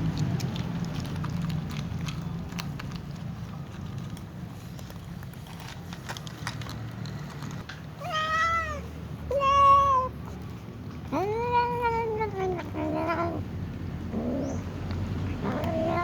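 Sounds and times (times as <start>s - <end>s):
kitten meowing: 8.0s - 10.2s.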